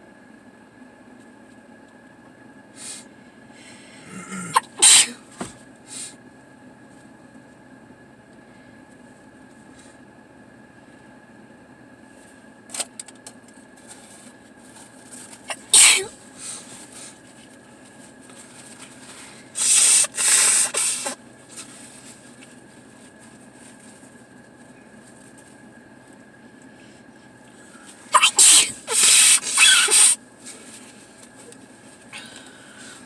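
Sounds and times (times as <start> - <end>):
person sneezing: 4.0 - 6.1, 15.5 - 16.2, 19.6 - 21.2, 28.1 - 30.2.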